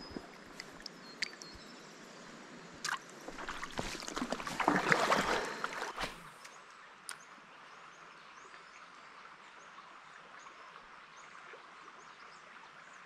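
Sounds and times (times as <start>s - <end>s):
water splashing: 2.8s - 6.4s.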